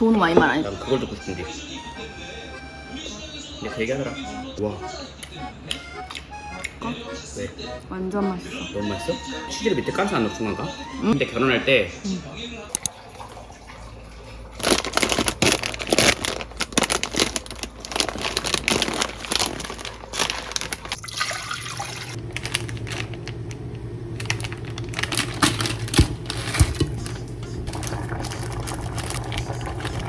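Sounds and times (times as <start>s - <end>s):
plastic packaging crinkling: 14.5s - 30.0s.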